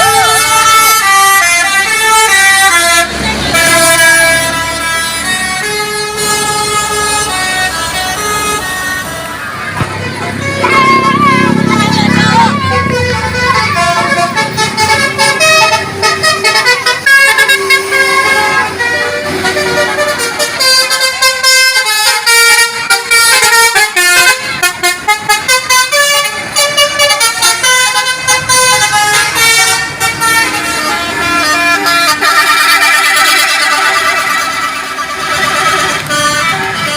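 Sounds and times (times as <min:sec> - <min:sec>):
musical bus horns playing tunes: 0:00.0 - 0:36.9.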